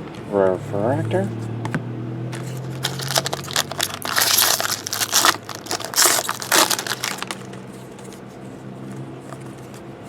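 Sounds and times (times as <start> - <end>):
foil wrapper crinkling and tearing: 2.4 - 7.6
faint handling: 2.4 - 8.4.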